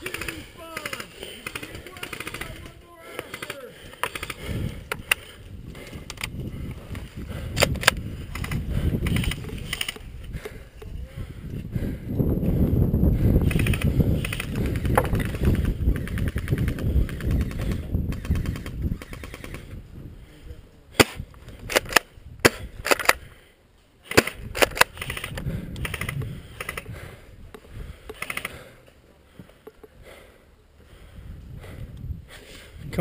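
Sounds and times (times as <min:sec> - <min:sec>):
airsoft guns firing bursts: 0:00.0 - 0:04.5, 0:13.4 - 0:19.7.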